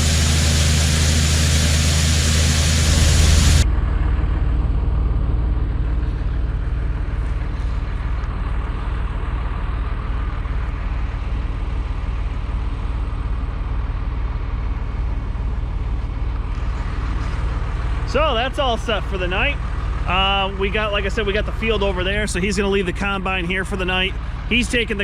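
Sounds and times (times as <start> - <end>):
loud rushing noise: 0.0 - 3.7
heavy engine low hum: 0.0 - 25.0.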